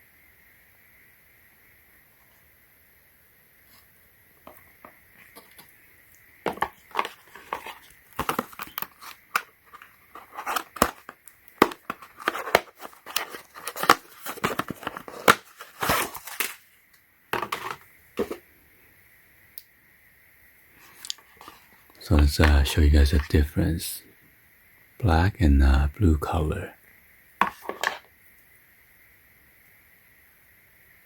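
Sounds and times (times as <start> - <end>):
plastic packaging crinkling: 6.5 - 16.8.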